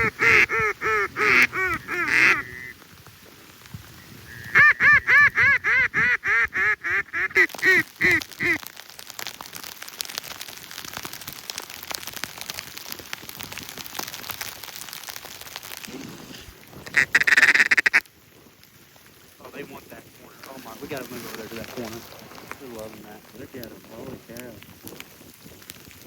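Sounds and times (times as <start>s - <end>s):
duck call quacks: 0.0s - 2.7s, 4.3s - 8.6s, 16.9s - 18.0s
faint steady hiss: 0.0s - 26.0s.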